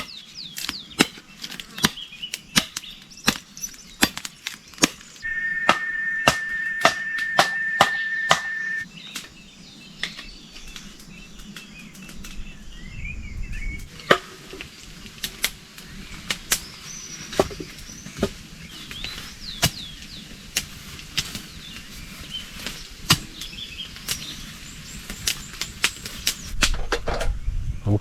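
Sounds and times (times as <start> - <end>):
birds chirping: 2.0 - 14.1
steady high tone with clicks: 5.2 - 8.8.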